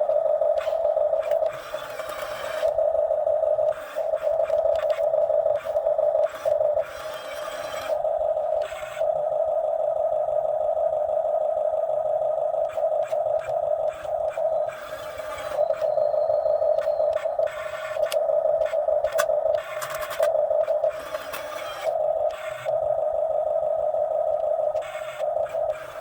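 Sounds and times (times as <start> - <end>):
excavator machinery whine: 0.0 - 26.0.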